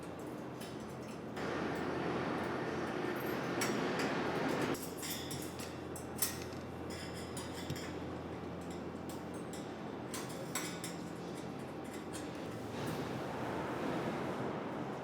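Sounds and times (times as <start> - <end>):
low machine hum: 1.4 - 4.8.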